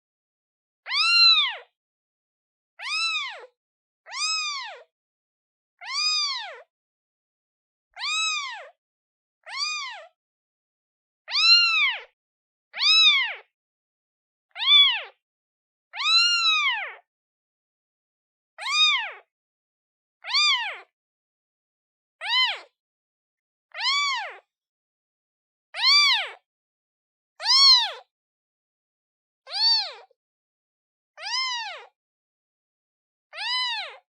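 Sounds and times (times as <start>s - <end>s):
kitten meowing: 0.9s - 1.7s, 2.8s - 3.5s, 4.1s - 4.9s, 5.8s - 6.7s, 8.0s - 8.7s, 9.4s - 10.1s, 11.3s - 12.1s, 12.8s - 13.5s, 14.6s - 15.2s, 16.0s - 17.0s, 18.6s - 19.2s, 20.2s - 20.9s, 22.2s - 22.7s, 23.7s - 24.4s, 25.8s - 26.4s, 27.4s - 28.1s, 29.5s - 30.1s, 31.2s - 31.9s, 33.4s - 34.0s.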